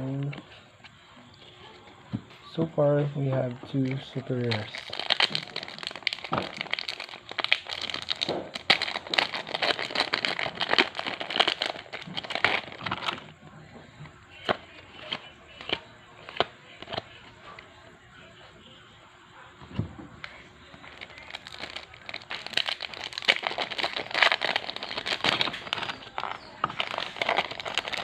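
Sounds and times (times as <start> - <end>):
wrapper crinkling and tearing: 3.7 - 13.3, 20.2 - 28.0.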